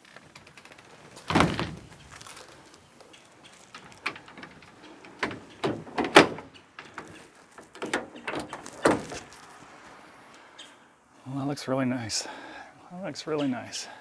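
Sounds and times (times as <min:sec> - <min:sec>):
tools knocking and thumping: 0:03.7 - 0:09.4.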